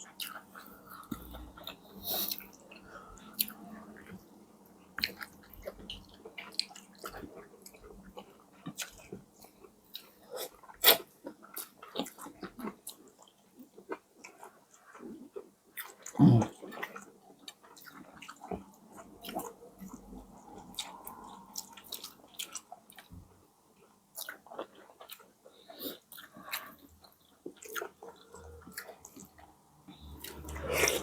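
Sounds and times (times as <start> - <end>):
chewing and biting: 24.1 - 31.0.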